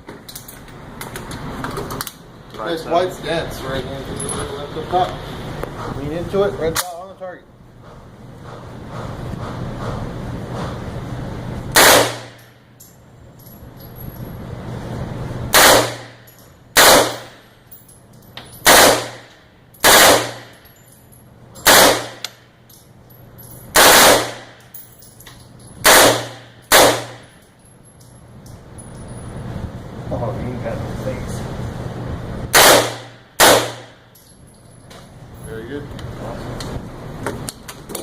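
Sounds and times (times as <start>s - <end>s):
low hum: 7.4s - 37.5s
gunshots with ringing echo: 11.8s - 12.5s, 15.5s - 17.4s, 18.6s - 20.6s, 21.6s - 22.3s, 23.7s - 24.6s, 25.8s - 27.3s, 32.5s - 34.1s.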